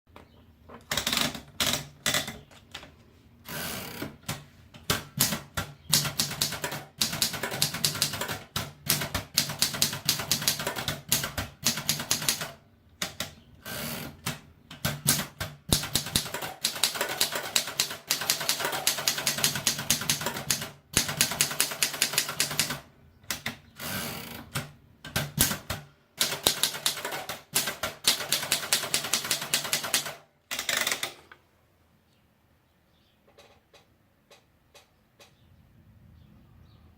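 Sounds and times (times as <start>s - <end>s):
typewriter key strikes: 14.8s - 23.5s.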